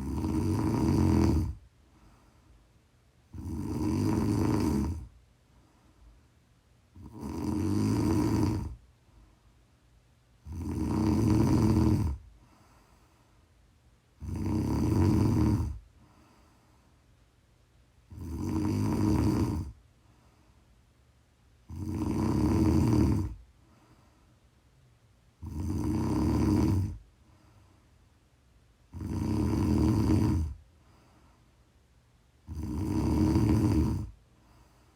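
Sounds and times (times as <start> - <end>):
loud regular snoring: 0.0 - 1.6, 3.3 - 5.2, 6.9 - 8.8, 10.4 - 12.3, 14.2 - 15.8, 18.1 - 19.8, 21.6 - 23.4, 25.4 - 27.0, 28.9 - 30.6, 32.4 - 34.2.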